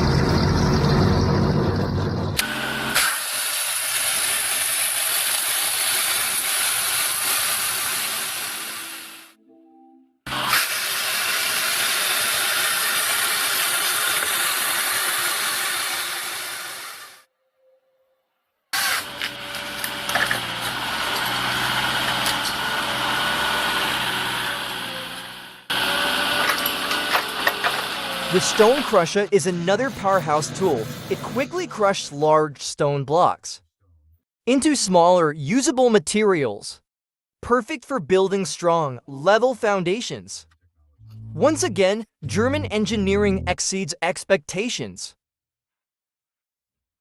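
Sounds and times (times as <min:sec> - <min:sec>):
machine engine running: 0:19.0 - 0:29.0.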